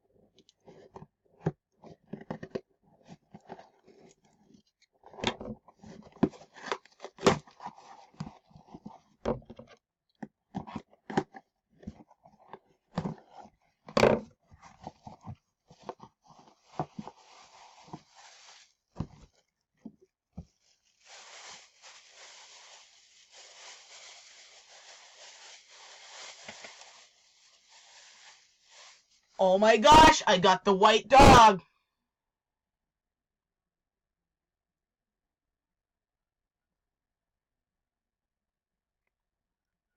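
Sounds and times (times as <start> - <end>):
packaging rustling: 20.5 - 29.3
packaging crackles and tearing: 20.6 - 29.0.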